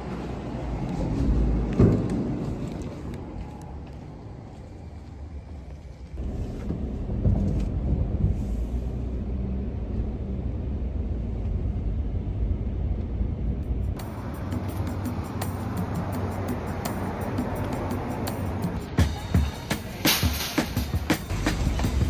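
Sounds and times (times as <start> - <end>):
vehicle driving rumble: 0.0 - 22.0.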